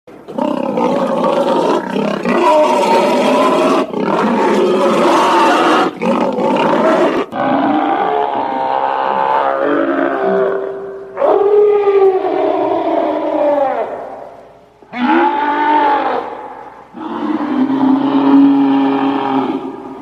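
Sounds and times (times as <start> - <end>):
monster roaring: 0.4 - 10.6.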